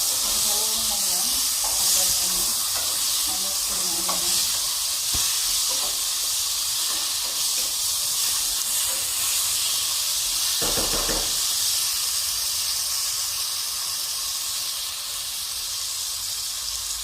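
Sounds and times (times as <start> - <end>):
food sizzling in a pan: 0.0 - 17.0.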